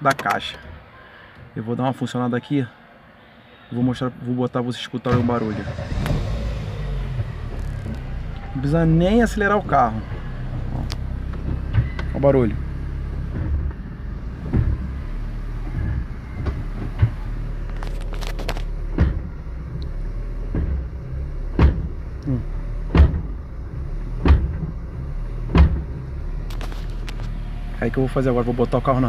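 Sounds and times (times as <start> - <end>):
sharp drivetrain clunk: 5.1 - 8.6
car engine idling: 5.1 - 29.0.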